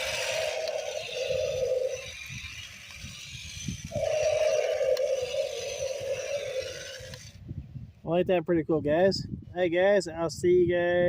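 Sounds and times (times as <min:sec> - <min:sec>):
toy dinosaur roar from speaker: 0:00.0 - 0:02.3, 0:03.9 - 0:07.3
wind rumble on microphone: 0:00.0 - 0:11.0.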